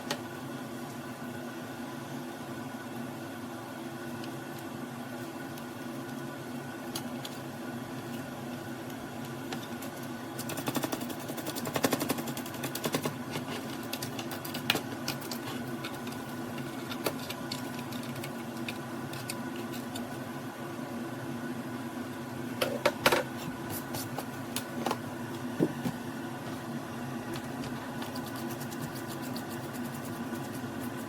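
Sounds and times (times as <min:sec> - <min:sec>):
rapid clicking and rattling: 0:09.6 - 0:20.0.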